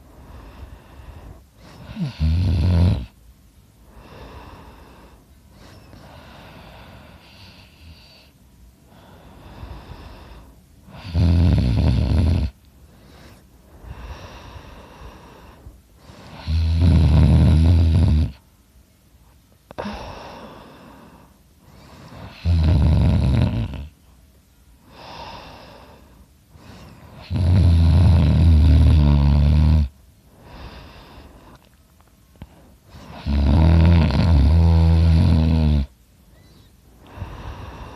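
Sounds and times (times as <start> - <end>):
quiet breathing: 0.0 - 37.9
man snoring loudly: 1.6 - 3.2, 10.9 - 12.6, 16.2 - 18.4, 22.1 - 23.9, 27.1 - 29.9, 33.0 - 35.9.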